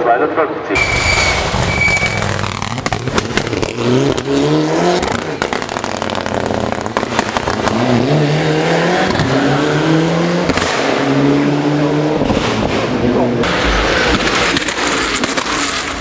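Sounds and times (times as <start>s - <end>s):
exhaust pops and crackles: 0.8s - 8.2s, 9.0s - 9.4s, 10.4s - 10.9s, 13.4s - 16.0s
car engine revving: 0.8s - 16.0s.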